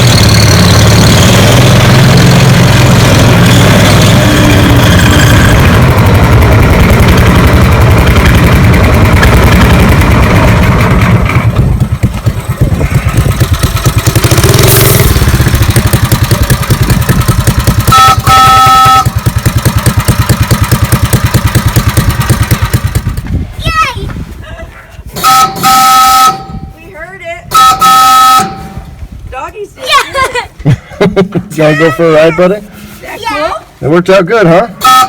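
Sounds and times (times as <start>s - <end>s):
small engine running: 0.0s - 23.3s
two-tone train whistle: 3.4s - 5.9s, 17.9s - 19.3s, 25.2s - 26.7s, 27.5s - 28.9s, 34.8s - 35.0s.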